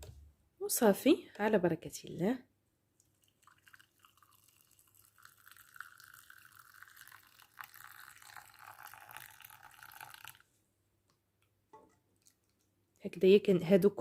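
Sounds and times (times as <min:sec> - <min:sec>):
liquid pouring through strainer: 0:03.0 - 0:10.5.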